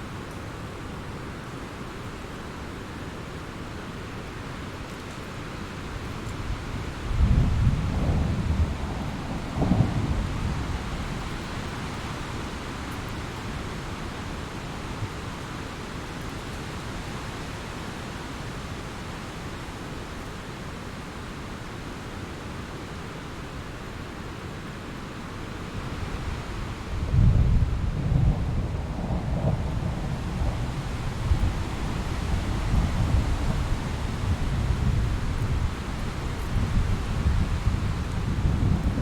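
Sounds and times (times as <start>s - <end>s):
steady rain hiss: 0.0s - 39.0s
thunder rumbling: 7.1s - 11.6s, 26.9s - 39.0s.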